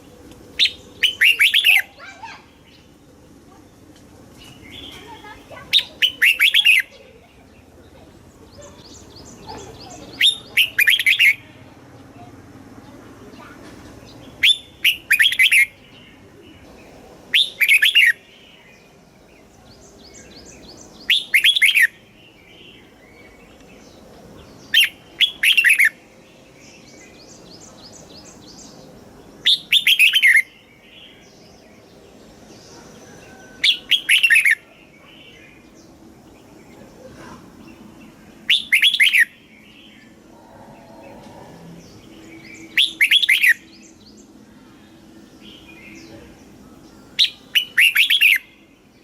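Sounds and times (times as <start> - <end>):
bird singing descending phrases: 0.0 - 49.0.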